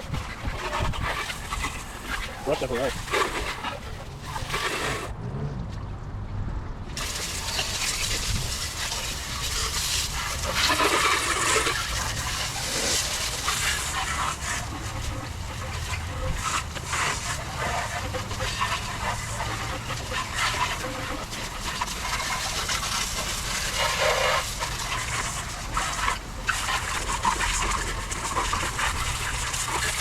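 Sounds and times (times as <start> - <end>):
water spraying from a hose: 0.0 - 5.1, 7.0 - 30.0.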